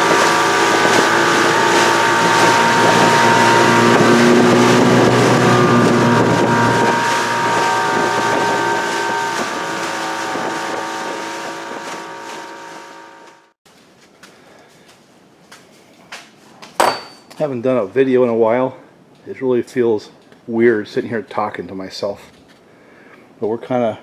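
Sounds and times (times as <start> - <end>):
outboard motorboat engine running: 0.0 - 13.6.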